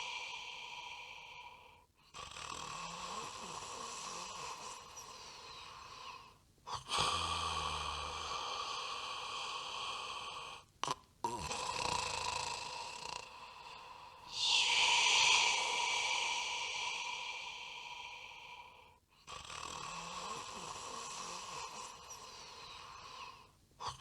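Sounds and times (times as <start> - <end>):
cat snoring: 2.2 - 13.4, 19.3 - 24.0.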